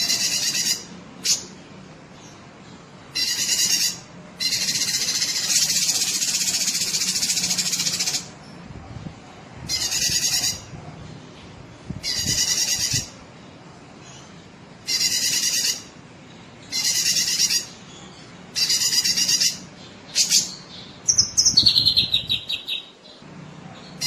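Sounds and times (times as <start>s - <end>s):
bird buzzy trilling: 0.0s - 1.6s, 3.1s - 8.4s, 9.7s - 10.7s, 12.0s - 13.2s, 14.8s - 16.0s, 16.6s - 17.9s, 18.5s - 23.0s.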